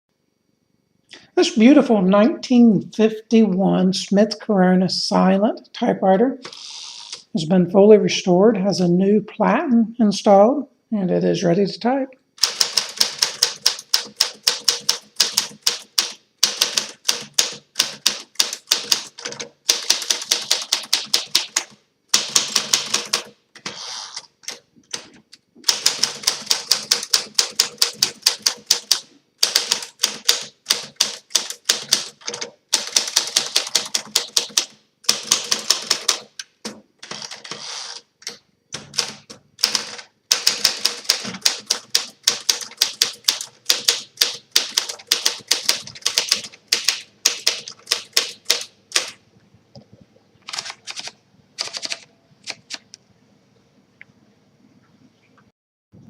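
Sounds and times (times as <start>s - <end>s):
manual typewriter typing: 12.4s - 49.2s, 50.4s - 52.9s.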